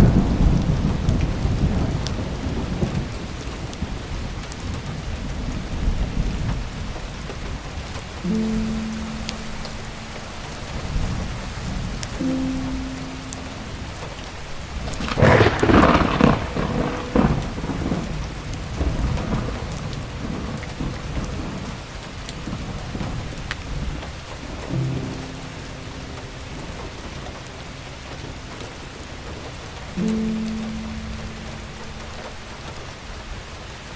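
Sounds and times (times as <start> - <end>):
steady rain falling: 0.0 - 33.9
soft held music notes: 7.7 - 15.2, 24.4 - 33.5
thunder rolling: 10.7 - 21.8.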